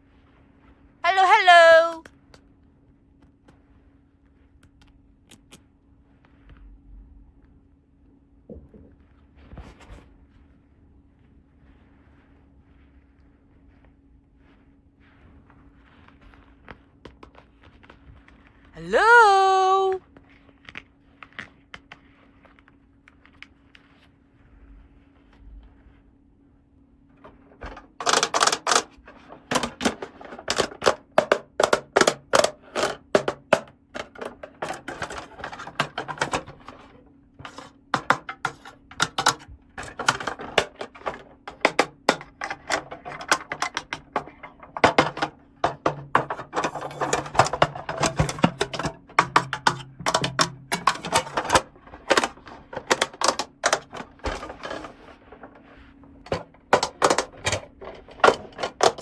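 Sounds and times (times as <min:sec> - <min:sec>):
plastic toy pieces clicking: 0:28.0 - 0:28.9, 0:29.5 - 0:36.4.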